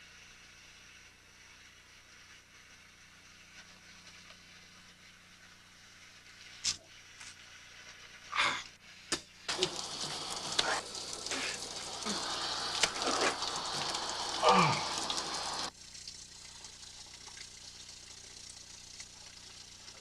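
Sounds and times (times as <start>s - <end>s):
grunts and breathing: 8.3s - 8.7s, 9.5s - 15.7s
shower water spray hissing: 8.9s - 16.7s.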